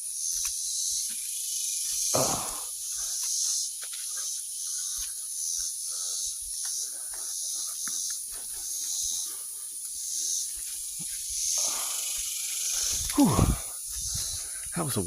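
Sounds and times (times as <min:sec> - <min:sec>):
hard breathing close to microphone: 0:04.1 - 0:10.6, 0:11.5 - 0:14.7.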